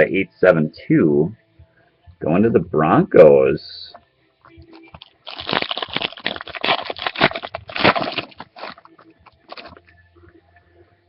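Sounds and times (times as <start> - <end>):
foil wrapper crinkling and tearing: 4.7 - 9.8.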